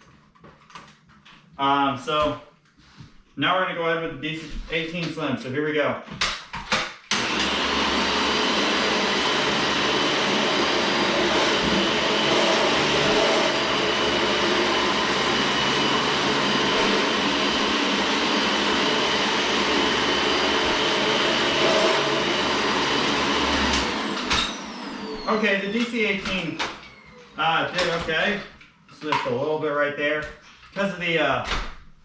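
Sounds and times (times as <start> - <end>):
vacuum cleaner motor whine: 7.1 - 28.5.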